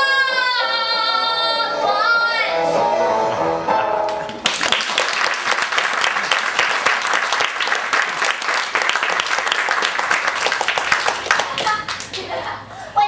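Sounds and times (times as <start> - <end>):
audience applauding: 4.1 - 12.3.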